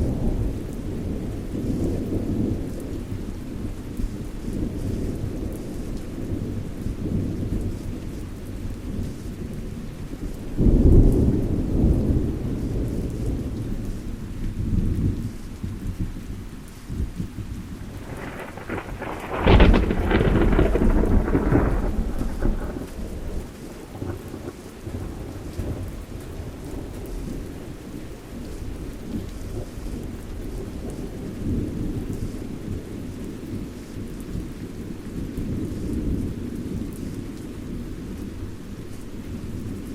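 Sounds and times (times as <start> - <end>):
low rolling thunder: 0.0 - 39.9
steady rain: 0.0 - 39.9
sharp thunderclap: 17.8 - 25.3.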